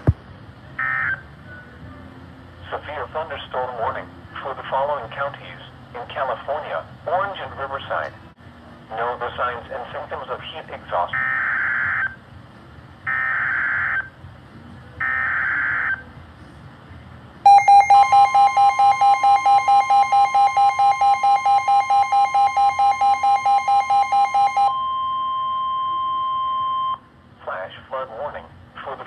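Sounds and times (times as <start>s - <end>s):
data burst tones: 17.5s - 25.2s
steady high alert tone: 17.5s - 27.0s.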